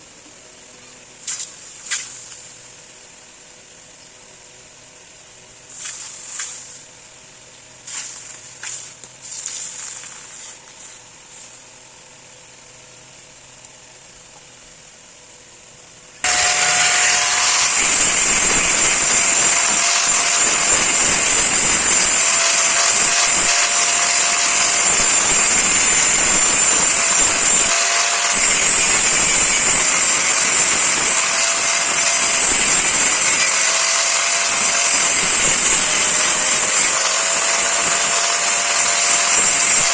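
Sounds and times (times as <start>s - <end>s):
power grinder grinding steel: 16.2s - 39.9s.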